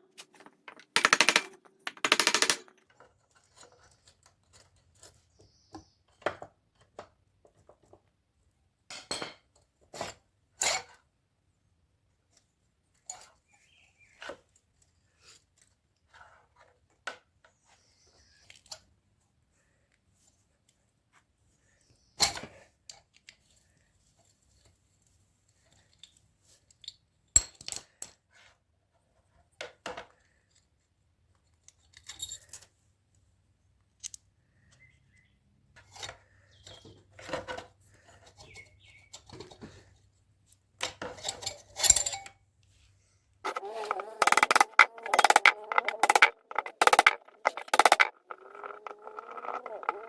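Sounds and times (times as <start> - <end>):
metal tools clinking: 41.2 - 42.4.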